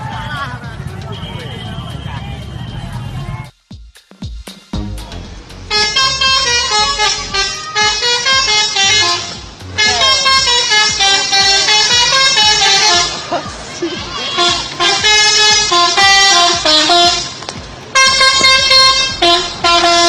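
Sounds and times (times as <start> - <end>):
bus musical horn playing tune: 5.7 - 20.0.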